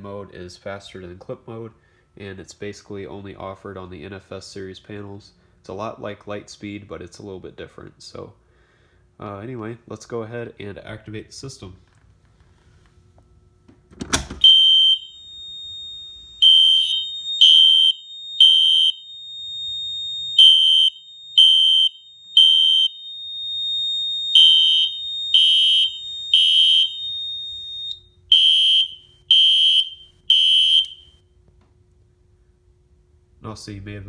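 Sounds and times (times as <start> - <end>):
steady high piezo beep: 14.4 - 31.1
fire alarm horn blasts: 14.4 - 31.2
fire alarm pull station clack: 28.3 - 31.1.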